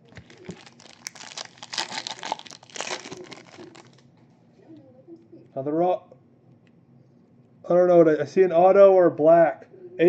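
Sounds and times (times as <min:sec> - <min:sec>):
plastic wrapper crinkling and tearing: 0:00.0 - 0:04.1.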